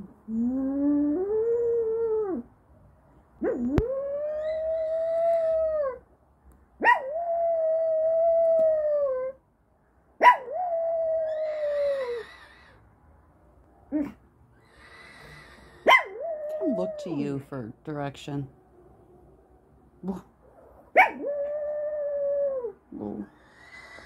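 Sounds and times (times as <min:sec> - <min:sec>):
dog howling: 0:03.4 - 0:06.0, 0:10.3 - 0:12.8, 0:14.9 - 0:17.3, 0:21.0 - 0:24.0.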